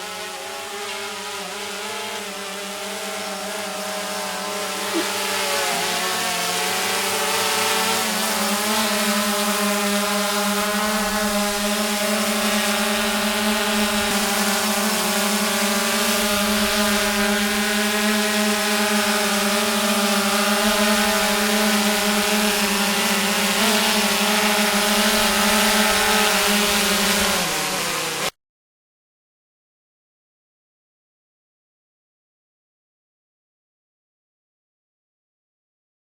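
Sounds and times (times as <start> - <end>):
atv engine running: 0.0 - 28.3.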